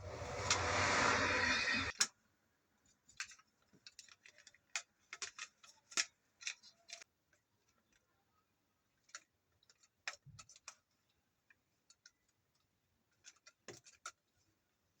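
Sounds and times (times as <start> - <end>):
plastic parts clicking: 3.2 - 7.0, 11.9 - 14.2.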